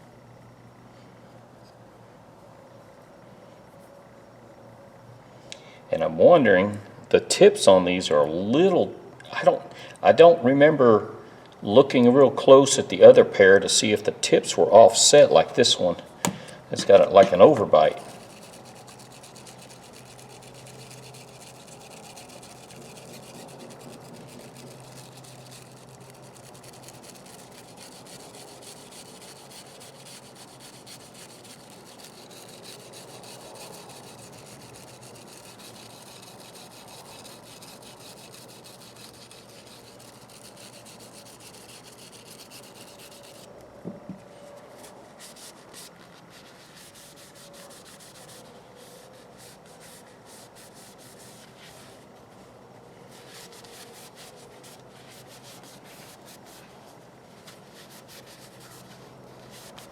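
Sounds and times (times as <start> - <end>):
hand scrubbing on steel: 16.8 - 43.5.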